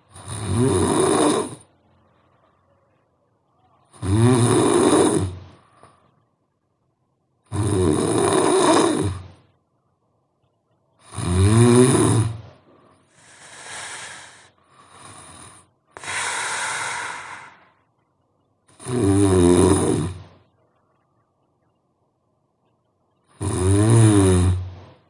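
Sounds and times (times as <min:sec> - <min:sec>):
person snoring loudly: 0:00.1 - 0:01.7, 0:03.9 - 0:05.5, 0:07.5 - 0:09.4, 0:11.0 - 0:12.4, 0:13.2 - 0:17.7, 0:18.7 - 0:20.3, 0:23.3 - 0:25.0
breathy exhale: 0:12.9 - 0:17.8.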